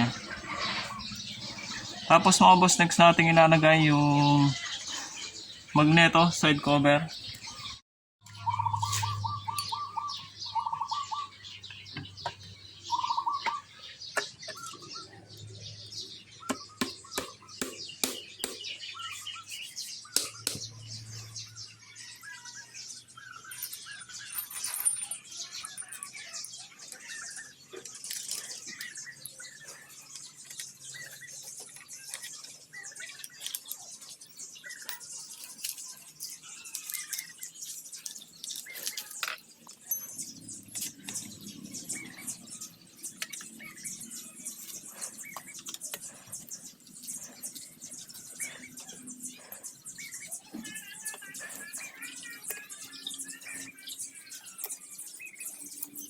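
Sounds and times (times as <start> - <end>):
birds chirping: 0.0 - 56.0
tools clicking and tapping: 16.5 - 18.7, 20.1 - 20.7.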